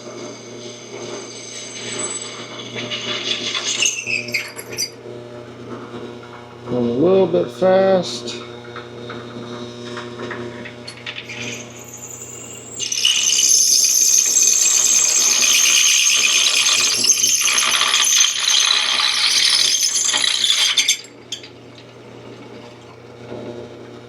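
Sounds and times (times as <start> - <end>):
drill bit screeching through steel: 0.3 - 5.0, 10.9 - 21.5
drill press motor hum: 8.3 - 24.0.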